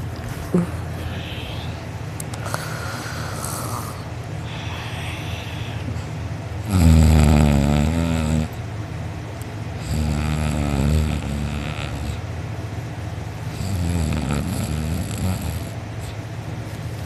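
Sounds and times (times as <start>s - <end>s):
person snoring loudly: 2.4s - 5.8s, 6.6s - 8.5s, 9.8s - 12.2s, 13.5s - 15.8s.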